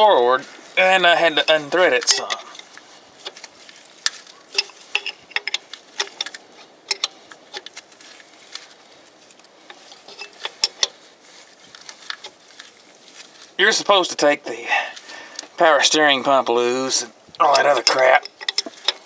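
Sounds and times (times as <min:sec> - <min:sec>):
hand tools clicking on metal: 0:01.3 - 0:07.9, 0:09.7 - 0:11.0, 0:17.4 - 0:19.0.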